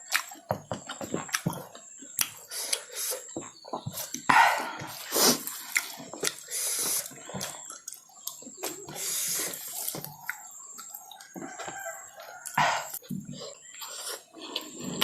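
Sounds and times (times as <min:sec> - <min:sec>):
wet chewing and smacking: 0:00.0 - 0:15.0
slurping: 0:04.0 - 0:10.9.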